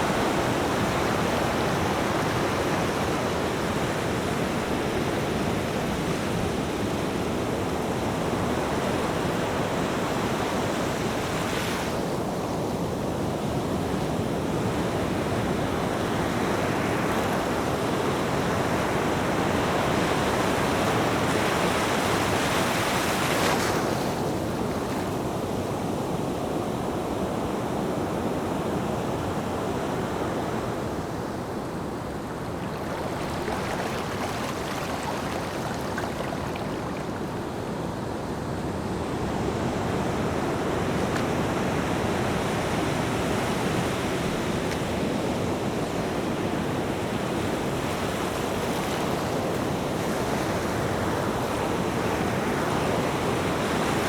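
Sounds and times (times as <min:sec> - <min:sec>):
ocean waves breaking: 0:14.5 - 0:25.6, 0:29.5 - 0:54.0.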